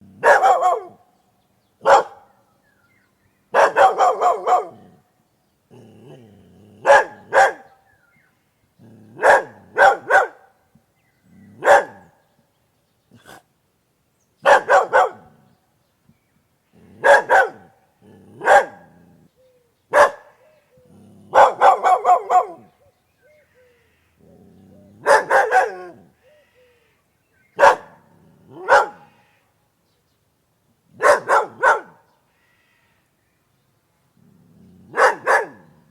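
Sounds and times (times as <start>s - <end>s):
dog barking: 0.2s - 1.0s, 1.8s - 2.4s, 3.5s - 4.9s, 6.8s - 7.8s, 9.2s - 10.5s, 11.6s - 12.2s, 14.4s - 15.4s, 17.0s - 17.7s, 18.4s - 18.9s, 19.9s - 20.4s, 21.3s - 22.7s, 24.9s - 26.0s, 27.6s - 29.1s, 31.0s - 32.1s, 34.9s - 35.8s.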